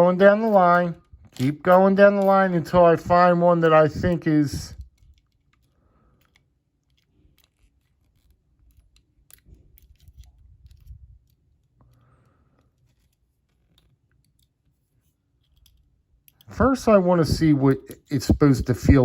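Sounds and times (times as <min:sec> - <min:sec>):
soft handling rustle: 0:00.1 - 0:19.0
metal lock picks clicking: 0:04.9 - 0:12.0, 0:15.3 - 0:16.5.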